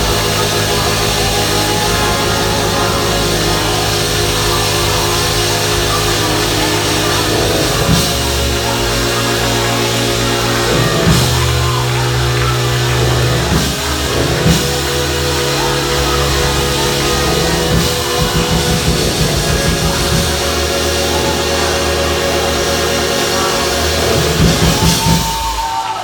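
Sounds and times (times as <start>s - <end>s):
bass notes: 0.0s - 25.8s
band music: 0.0s - 26.0s
cymbal crashes: 0.0s - 26.0s.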